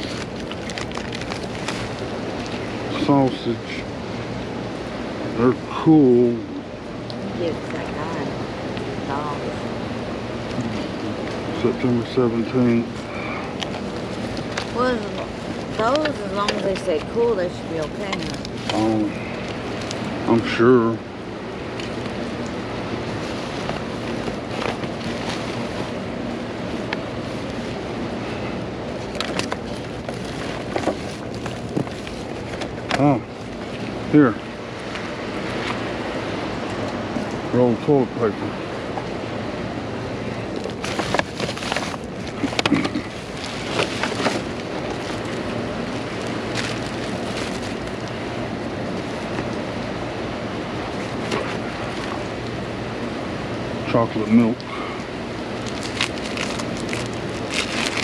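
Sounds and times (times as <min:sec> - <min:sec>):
rain: 0:00.0 - 0:31.8
wind: 0:00.0 - 0:58.0.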